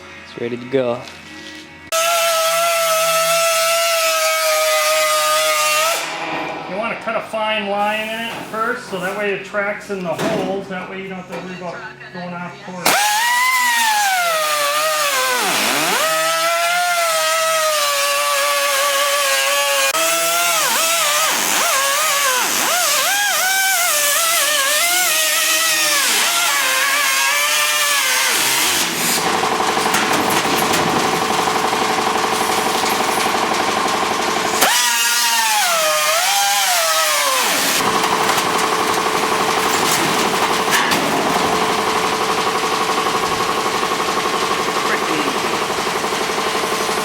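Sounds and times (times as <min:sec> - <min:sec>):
power tool cutting sheet metal: 0:01.9 - 0:06.9, 0:12.8 - 0:47.0
motor whine: 0:12.9 - 0:27.0.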